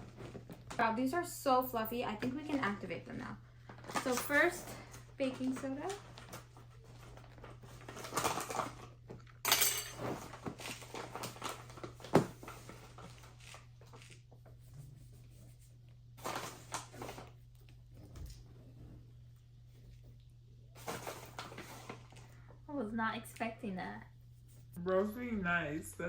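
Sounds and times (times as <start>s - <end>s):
rustling and scraping in plastic buckets: 20.8s - 22.3s.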